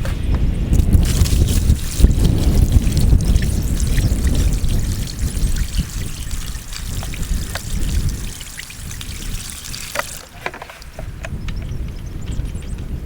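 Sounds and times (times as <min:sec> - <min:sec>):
water pouring and trickling: 0:00.7 - 0:11.0
water drips and splashes: 0:00.8 - 0:11.0.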